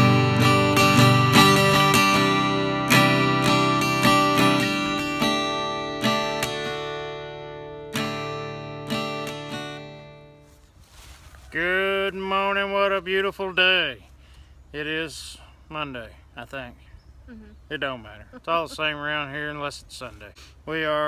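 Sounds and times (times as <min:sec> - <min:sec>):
acoustic guitar chords: 0:00.0 - 0:10.6.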